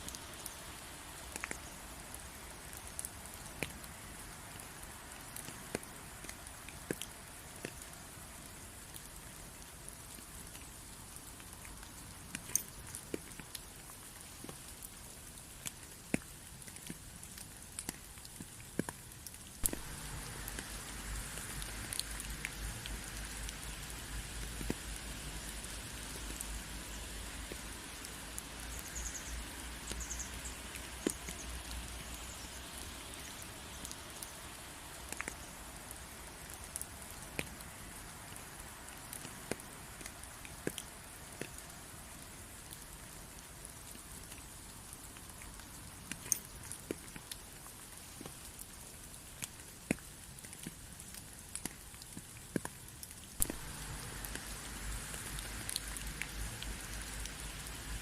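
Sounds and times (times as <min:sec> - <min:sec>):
rain falling: 0:00.0 - 0:58.0
raindrops ticking: 0:00.0 - 0:58.0.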